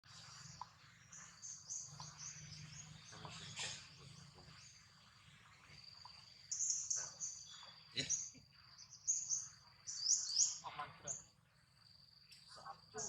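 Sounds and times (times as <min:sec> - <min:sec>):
rustle: 0:00.0 - 0:11.5
short high chirping calls: 0:06.4 - 0:10.7.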